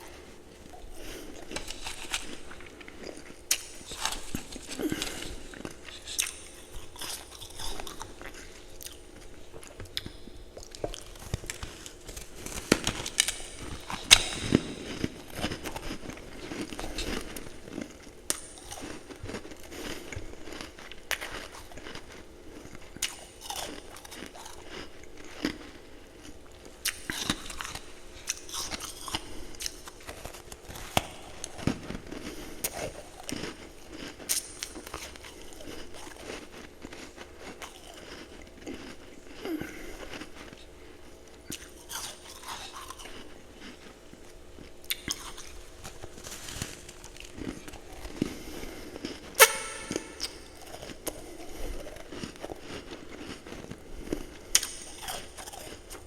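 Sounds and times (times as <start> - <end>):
person crunching ice: 1.3 - 5.3.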